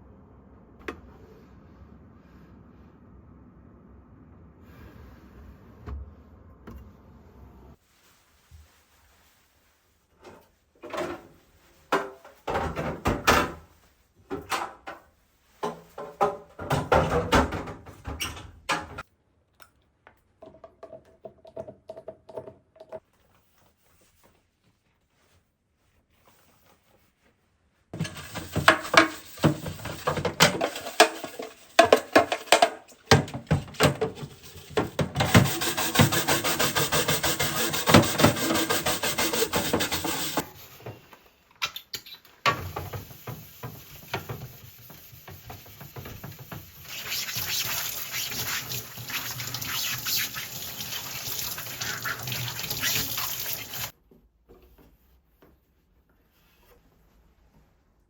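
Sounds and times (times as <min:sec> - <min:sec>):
items knocking and clattering: 0:11.9 - 0:13.7, 0:14.3 - 0:19.0, 0:20.4 - 0:23.1, 0:28.0 - 0:36.6
water running from tap: 0:35.3 - 0:40.4, 0:42.6 - 0:53.9.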